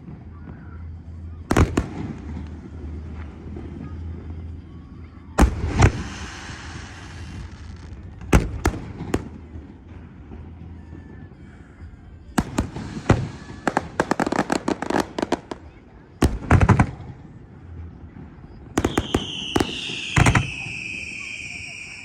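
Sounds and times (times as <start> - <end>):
fireworks bangs: 0.0 - 4.7, 5.4 - 22.0
fireworks crackling hiss: 5.4 - 16.6, 18.4 - 22.0.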